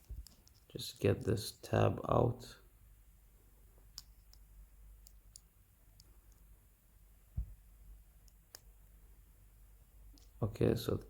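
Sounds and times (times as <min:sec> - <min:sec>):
small plastic clicks: 0:00.0 - 0:00.8, 0:03.9 - 0:06.5
dull low thump: 0:07.4 - 0:07.6.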